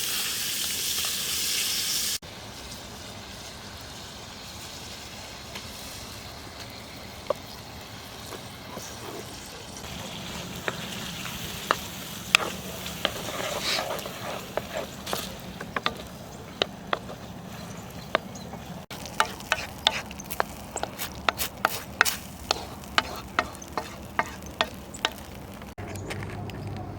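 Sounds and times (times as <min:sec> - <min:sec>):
food sizzling in a pan: 0:00.0 - 0:18.2, 0:18.8 - 0:25.8
utensil scraping and tapping pan: 0:10.4 - 0:25.7.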